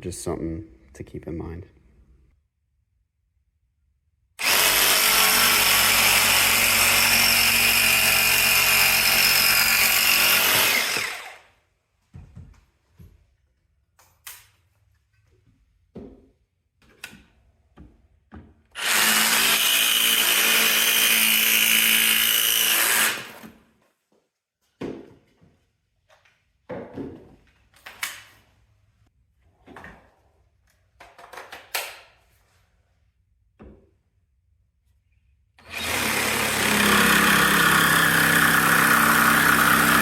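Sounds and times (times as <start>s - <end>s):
jigsaw cutting wood: 4.4s - 11.5s, 18.8s - 23.6s, 35.6s - 40.0s.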